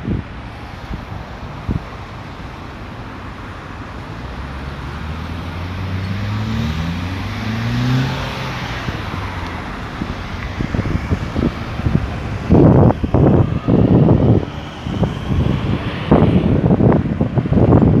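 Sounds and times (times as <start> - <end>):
tyre and traffic noise: 0.0 - 18.0
vehicle accelerating past: 4.1 - 17.0.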